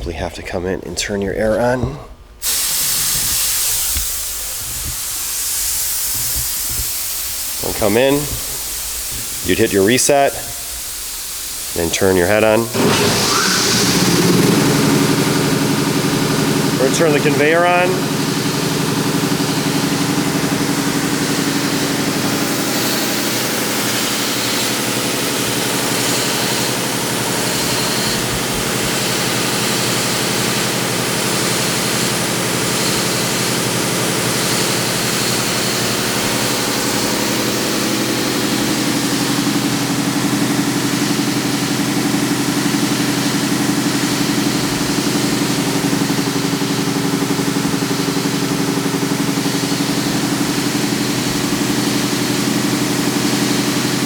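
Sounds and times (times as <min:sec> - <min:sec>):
belt sander humming: 0:07.9 - 0:30.6, 0:31.2 - 0:54.0.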